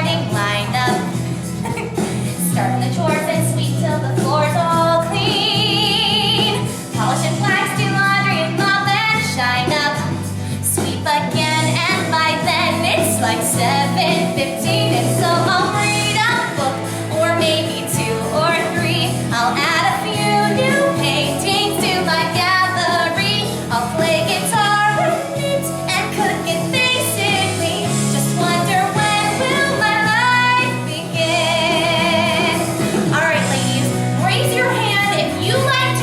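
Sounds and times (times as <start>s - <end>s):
pop backing music: 0.0s - 36.0s
woman singing: 0.0s - 36.0s.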